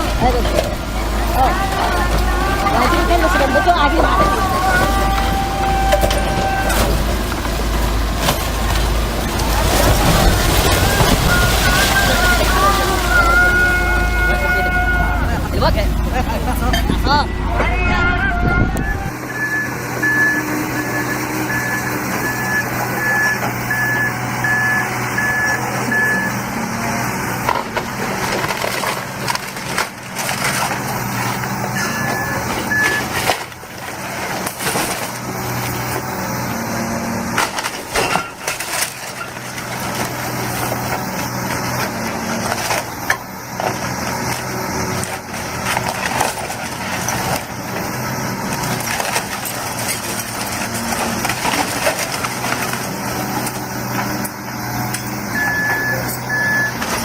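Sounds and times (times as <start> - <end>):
construction machine engine running: 0.0 - 57.0
reversing alarm beeping: 1.3 - 7.1, 10.6 - 15.7, 16.6 - 26.9, 31.6 - 33.3, 53.2 - 57.0
material cracking and crunching: 4.1 - 13.6.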